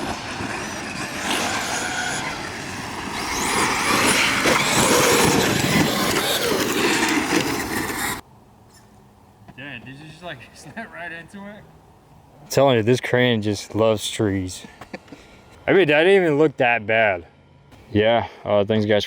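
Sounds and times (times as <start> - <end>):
electric motors whining: 0.0 - 8.2.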